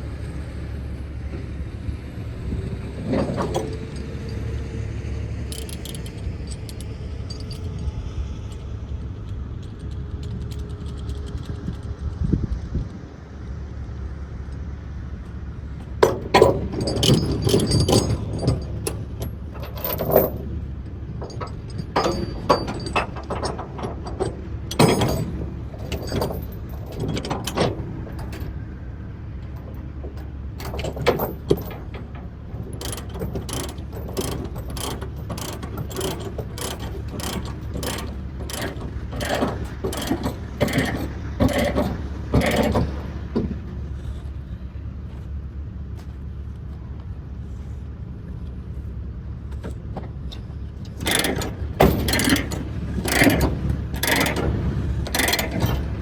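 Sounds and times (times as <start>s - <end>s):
ratchet pawl clicking: 5.5s - 7.6s, 32.8s - 41.8s, 51.0s - 53.4s, 54.0s - 54.4s, 55.1s - 55.6s.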